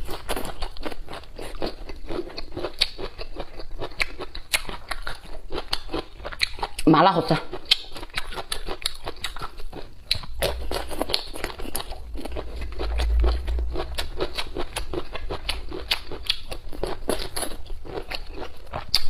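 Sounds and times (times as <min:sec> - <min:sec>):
chewing and lip smacking: 0:00.0 - 0:19.0
low rumble: 0:10.1 - 0:18.4.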